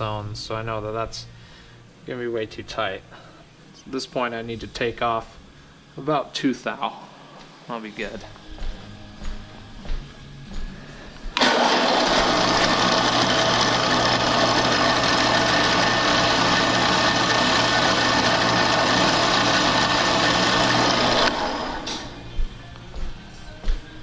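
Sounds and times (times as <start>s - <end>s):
drill press running: 11.3s - 22.4s.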